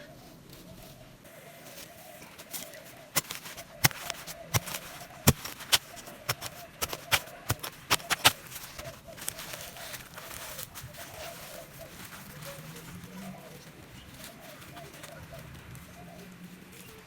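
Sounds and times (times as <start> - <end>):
digging tool knocking into ground: 3.2 - 10.4.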